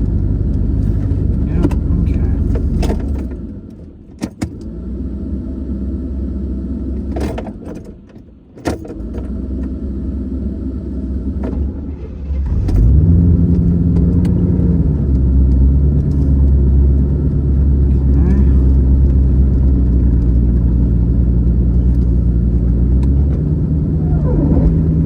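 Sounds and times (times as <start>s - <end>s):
car engine running and revving: 0.0s - 8.2s, 8.8s - 25.0s
sharp clicks and rattles: 15.0s - 23.5s.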